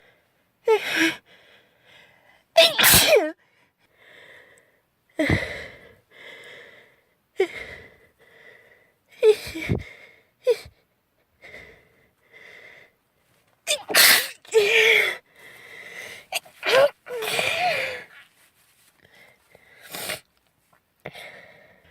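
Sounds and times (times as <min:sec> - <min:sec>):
quiet breaths: 0:00.0 - 0:02.6, 0:03.4 - 0:13.6, 0:14.6 - 0:21.9
girl sneezing: 0:02.6 - 0:03.4, 0:13.7 - 0:15.1, 0:16.3 - 0:18.2.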